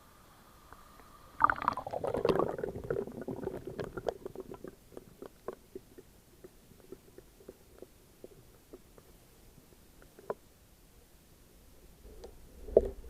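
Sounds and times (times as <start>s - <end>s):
water gurgling and bubbling: 1.4s - 5.9s.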